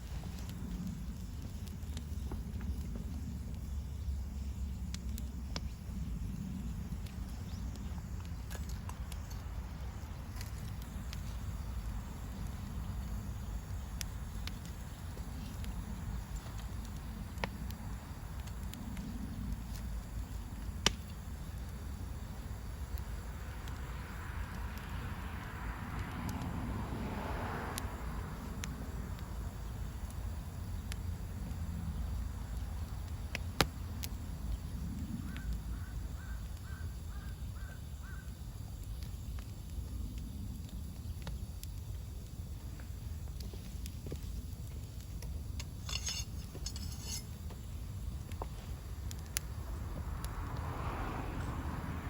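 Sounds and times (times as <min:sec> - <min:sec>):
steady low rumble: 0:00.0 - 0:27.1, 0:27.8 - 0:36.2, 0:38.5 - 0:52.0
campfire crackling: 0:00.0 - 0:52.0
fire popping: 0:00.0 - 0:52.0.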